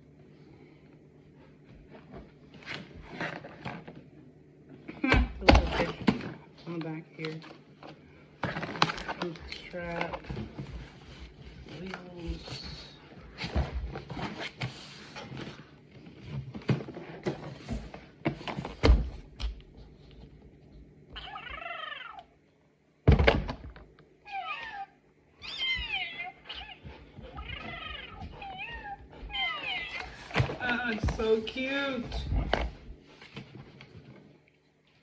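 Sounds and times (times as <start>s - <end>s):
recorded cat meowing: 24.3s - 30.1s.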